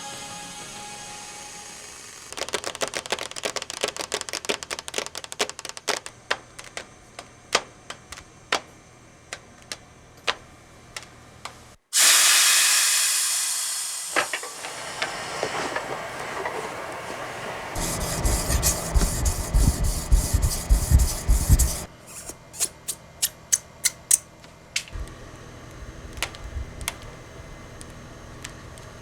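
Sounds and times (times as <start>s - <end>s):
loud spray hiss: 11.9s - 21.9s.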